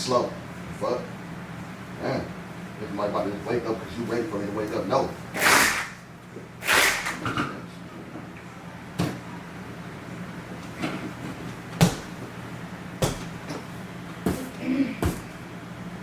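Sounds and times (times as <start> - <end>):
sharp knocks and bangs: 11.8 - 12.2.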